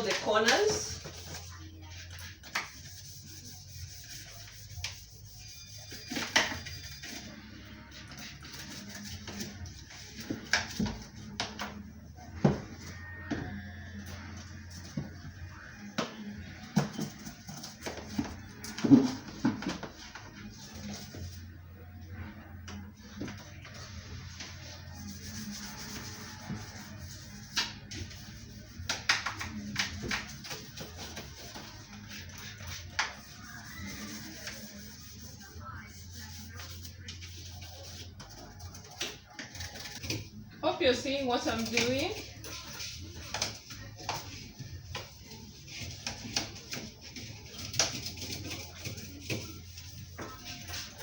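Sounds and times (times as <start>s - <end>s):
scrubbing fridge surfaces: 0.0s - 11.2s, 23.4s - 40.0s.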